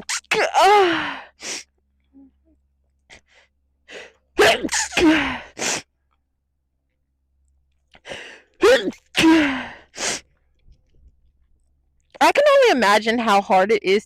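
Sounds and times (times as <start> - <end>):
breaths: 3.1 - 4.2, 7.9 - 8.6
woman sneezing: 4.4 - 5.8, 8.6 - 10.2.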